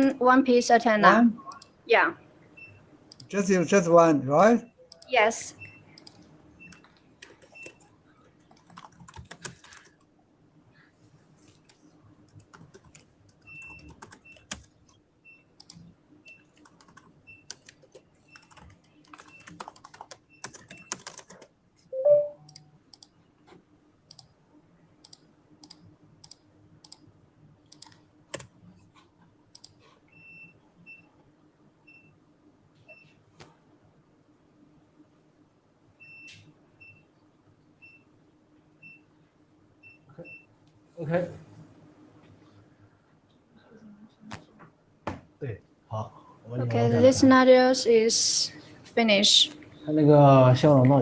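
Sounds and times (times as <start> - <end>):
faint steady hum: 0.0 - 51.0
keyboard typing clicks: 3.1 - 3.3, 6.0 - 10.0, 11.5 - 14.7, 15.6 - 23.1, 24.1 - 24.3, 25.0 - 27.0, 27.7 - 28.5, 29.5 - 29.8
short high beeps: 22.0 - 22.6.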